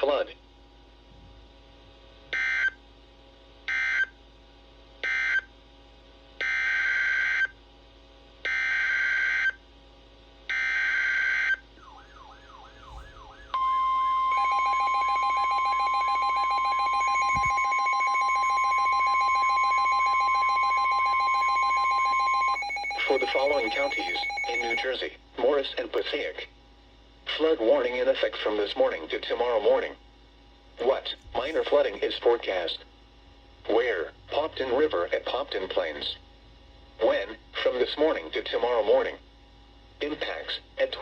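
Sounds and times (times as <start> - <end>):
steady warning alarm tone: 10.5 - 25.0
faint repeating warble: 11.8 - 25.0
digital data bursts: 14.3 - 24.9.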